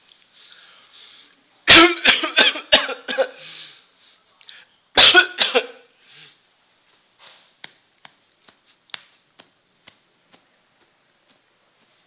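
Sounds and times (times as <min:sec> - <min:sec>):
hand patting a back: 0:06.9 - 0:12.0.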